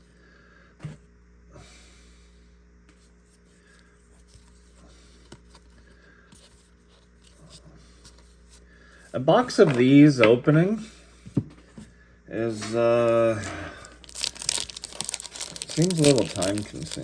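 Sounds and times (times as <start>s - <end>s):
paper cards rustling: 12.6s - 17.0s.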